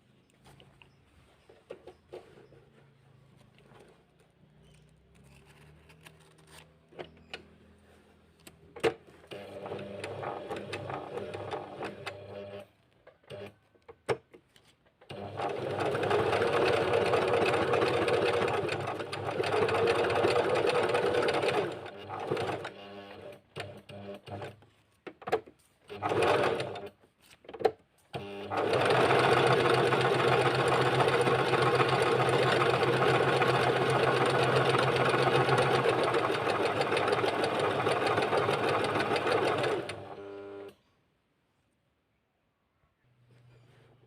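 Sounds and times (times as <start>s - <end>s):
sewing machine stitching: 9.2s - 12.7s, 15.0s - 24.6s, 25.9s - 27.0s, 28.2s - 40.8s.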